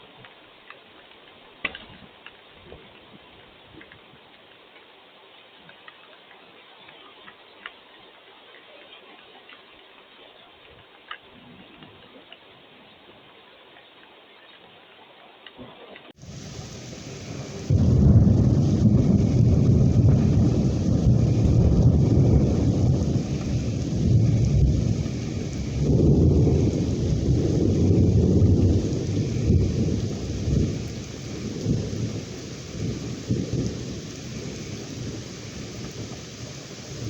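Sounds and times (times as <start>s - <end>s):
steady rain hiss: 0.0s - 37.0s
rolling thunder: 16.2s - 37.0s.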